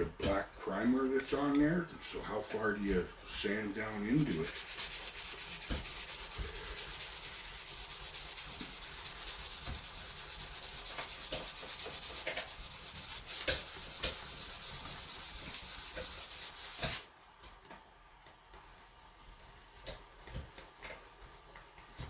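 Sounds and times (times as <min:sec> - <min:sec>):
sandpaper scrubbing painted panel: 0:04.0 - 0:17.0.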